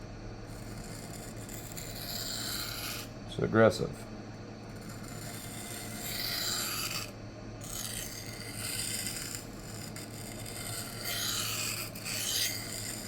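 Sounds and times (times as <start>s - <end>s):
knife scraping sharpening plate: 7.6s - 13.0s.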